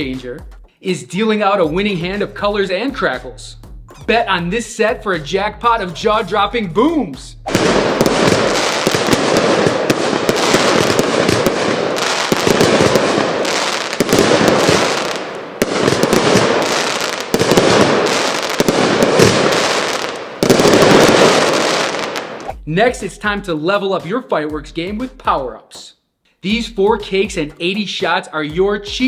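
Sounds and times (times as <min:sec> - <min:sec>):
fireworks crackling and booming: 0:07.5 - 0:22.9.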